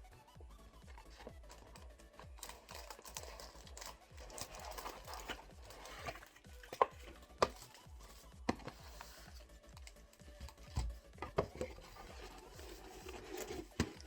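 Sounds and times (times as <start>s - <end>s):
background music with low beat: 0.0s - 14.0s
cardboard box rustling and scraping: 2.4s - 9.5s, 10.6s - 14.0s.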